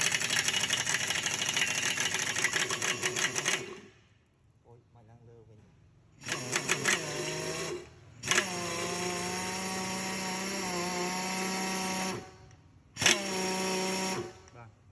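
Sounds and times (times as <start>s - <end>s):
power drill motor running: 0.0s - 3.8s, 6.2s - 12.4s, 13.0s - 14.5s
drill clicks: 0.0s - 3.9s, 6.2s - 14.6s.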